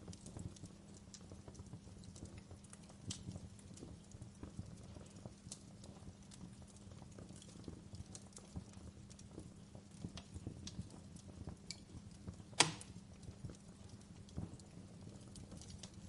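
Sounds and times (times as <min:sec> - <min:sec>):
campfire crackling: 0:00.0 - 0:16.0
loud sharp pop: 0:12.6 - 0:13.0.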